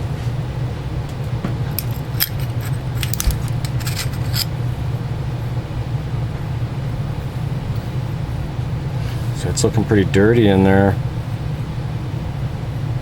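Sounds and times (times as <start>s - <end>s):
metallic clinks and taps of tools: 1.8s - 4.5s.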